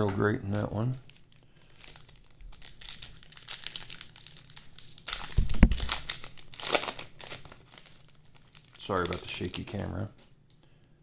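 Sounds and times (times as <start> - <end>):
plastic wrapper crinkling: 0.0 - 10.6
low thump: 5.4 - 5.9.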